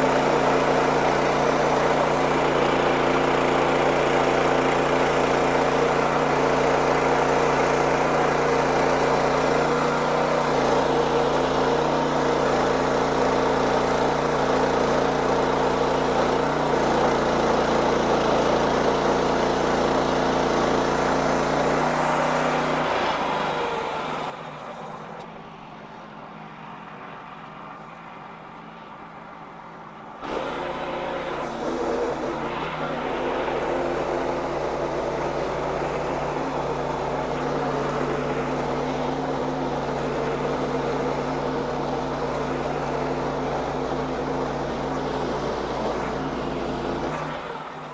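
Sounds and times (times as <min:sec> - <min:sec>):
band sawmill drone: 0:30.2 - 0:47.9.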